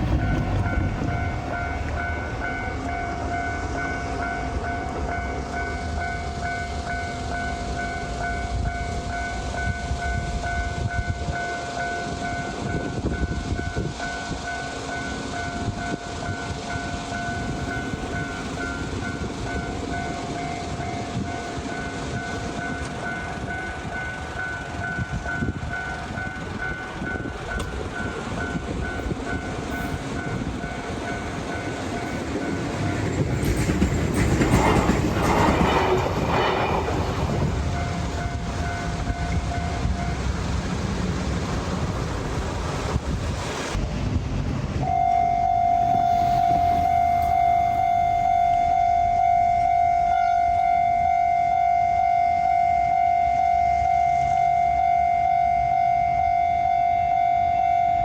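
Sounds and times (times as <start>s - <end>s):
train wheels clicking on rail joints: 0.0s - 44.8s
train passing: 0.0s - 58.0s
level crossing alarm ringing: 44.8s - 58.0s.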